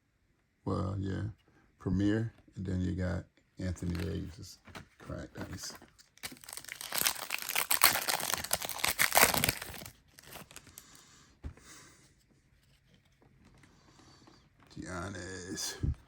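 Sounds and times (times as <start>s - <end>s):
cards being handled: 3.8s - 10.8s
wrapper tearing and crinkling: 6.2s - 10.8s.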